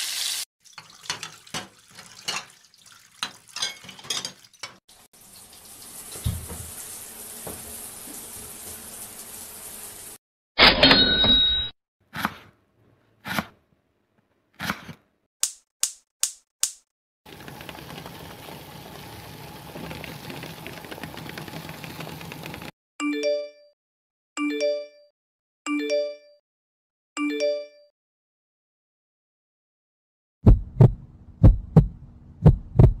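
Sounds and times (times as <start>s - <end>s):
chime-like tones: 10.8s - 11.7s.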